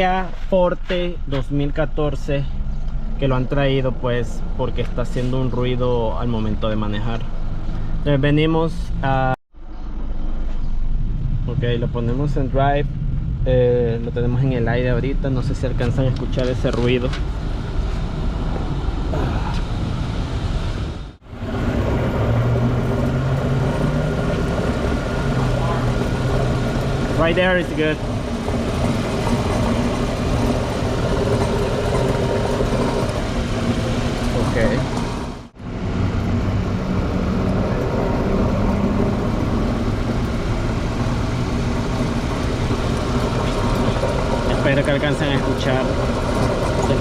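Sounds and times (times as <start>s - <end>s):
car engine running: 10.0s - 47.0s
grinding hum of wheel bearing: 19.7s - 47.0s.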